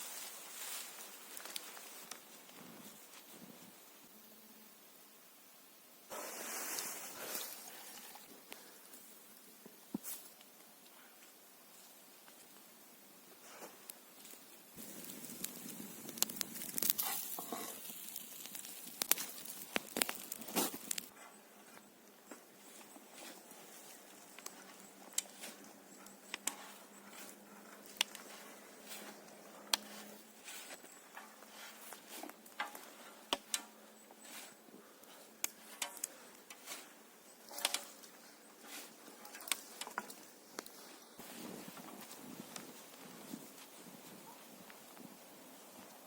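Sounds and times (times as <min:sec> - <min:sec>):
crunching and crackling: 0:00.0 - 0:03.4, 0:13.5 - 0:43.9
soft steady hiss: 0:00.0 - 0:46.0
light clicks or crunches: 0:15.1 - 0:21.1, 0:34.3 - 0:40.8.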